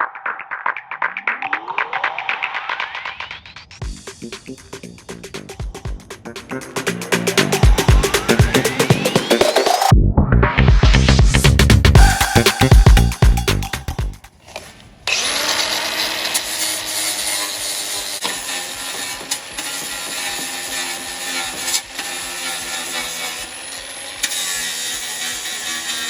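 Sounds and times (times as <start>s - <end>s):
power tool grinding metal: 15.1s - 26.0s.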